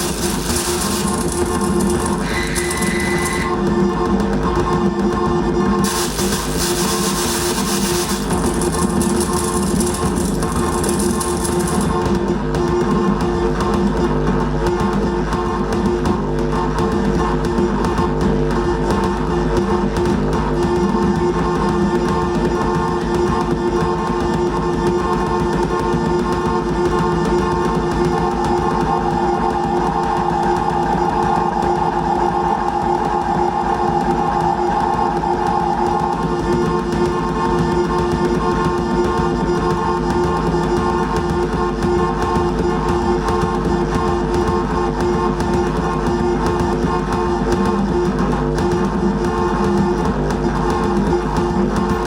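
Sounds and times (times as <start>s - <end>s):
higher held tone: 0.0s - 3.7s, 28.2s - 36.9s
droning instrumental music: 0.0s - 52.0s
low pulse: 26.5s - 50.1s.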